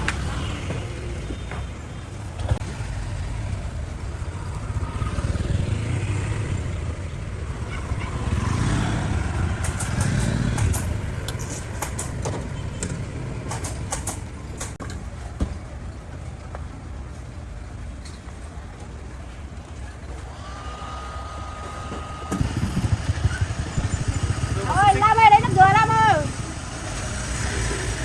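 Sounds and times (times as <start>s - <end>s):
motorbikes passing: 0.0s - 14.8s, 19.6s - 28.0s
street traffic: 0.0s - 28.0s.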